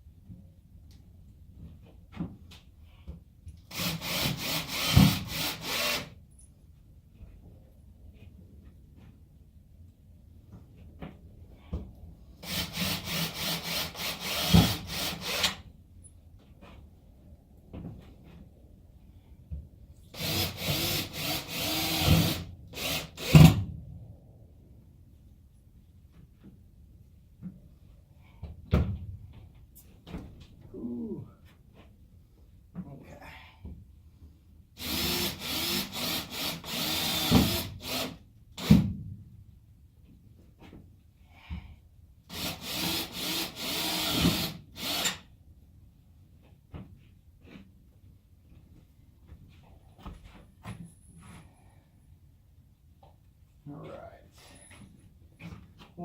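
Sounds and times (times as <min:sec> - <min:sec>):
power drill driving screws: 0:03.7 - 0:06.2, 0:12.4 - 0:15.6, 0:20.2 - 0:23.6, 0:34.8 - 0:38.8, 0:42.3 - 0:45.3
tool rasping into wood: 0:20.2 - 0:23.5, 0:34.8 - 0:38.2, 0:42.3 - 0:45.2.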